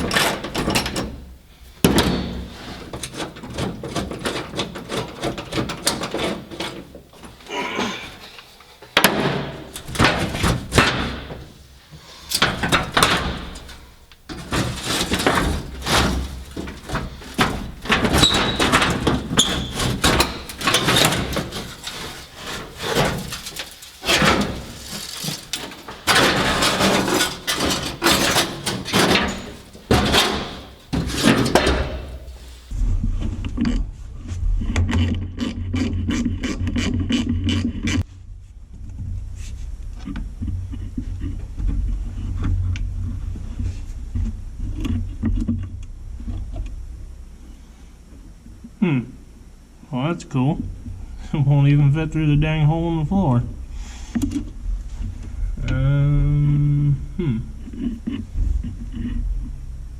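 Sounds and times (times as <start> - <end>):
tools and metal parts clunking: 0.0 - 32.8
low mechanical hum: 0.0 - 59.9.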